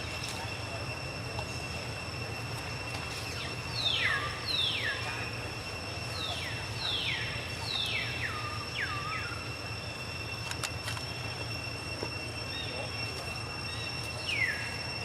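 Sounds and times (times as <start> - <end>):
high-pitched whine: 0.0 - 15.0
low hum: 0.0 - 15.0.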